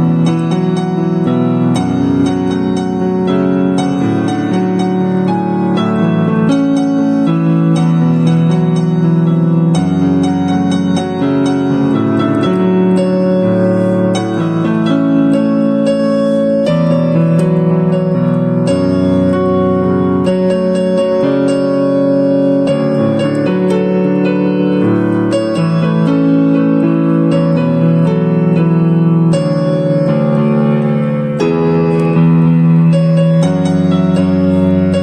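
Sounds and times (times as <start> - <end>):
gentle electric piano piece: 0.0 - 35.0.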